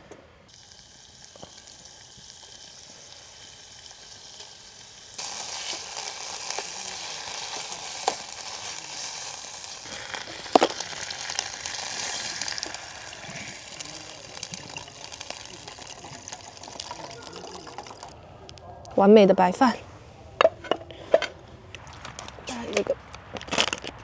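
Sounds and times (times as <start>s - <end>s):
oil and ginger sizzling in a pan: 0.5s - 18.2s.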